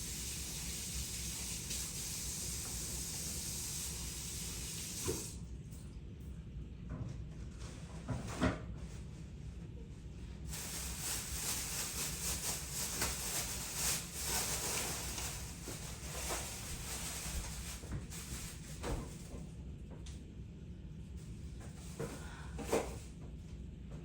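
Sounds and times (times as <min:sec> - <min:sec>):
kitchen tap running: 0:00.0 - 0:05.4.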